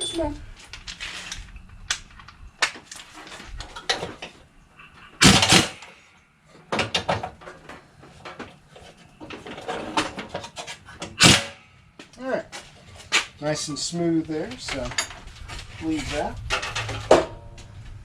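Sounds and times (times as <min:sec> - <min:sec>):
metal tools clinking: 0:00.0 - 0:00.4, 0:14.5 - 0:17.4.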